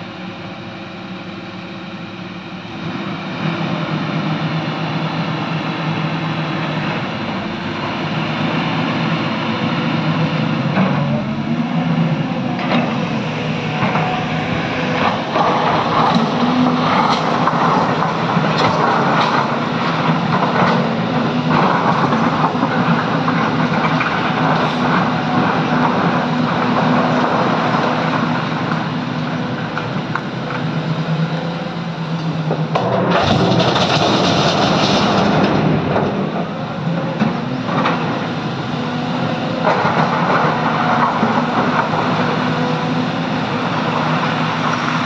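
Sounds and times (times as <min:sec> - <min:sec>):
excavator diesel engine running: 0:00.0 - 0:45.0
knocks and clatter: 0:12.6 - 0:28.9, 0:32.4 - 0:38.5.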